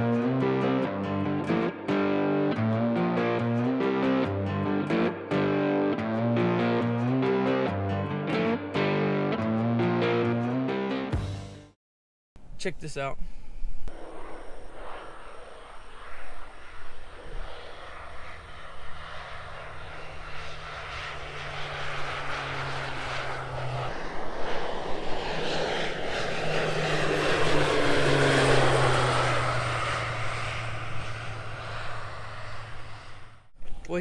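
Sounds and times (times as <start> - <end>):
combine harvester engine hum: 25.1 - 33.4.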